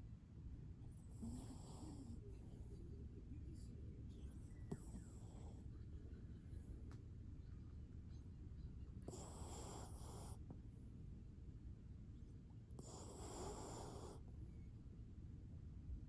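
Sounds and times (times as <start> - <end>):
dog snoring faintly: 0.9 - 3.0, 4.2 - 5.9, 9.0 - 10.6, 12.7 - 14.4.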